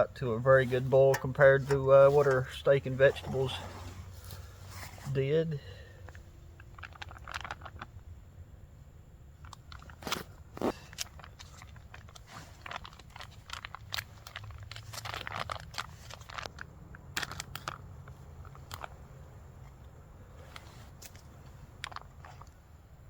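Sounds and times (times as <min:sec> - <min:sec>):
foil pouch crinkling: 0:06.6 - 0:08.0, 0:09.4 - 0:19.0, 0:20.4 - 0:22.6.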